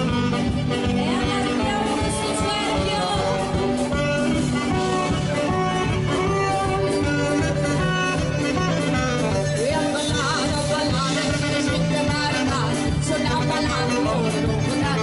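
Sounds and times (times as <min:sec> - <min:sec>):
live band playing: 0:00.0 - 0:15.0.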